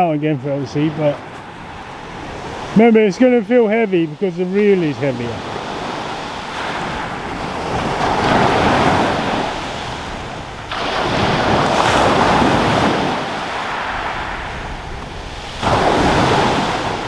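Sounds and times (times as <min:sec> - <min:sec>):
waves breaking on shingle: 0:00.8 - 0:17.0
wind rumbling on microphone: 0:05.0 - 0:17.0.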